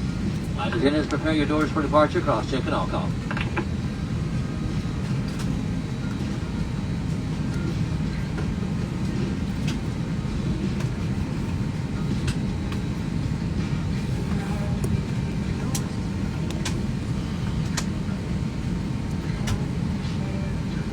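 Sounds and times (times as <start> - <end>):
airliner cabin rumble: 0.0 - 20.9.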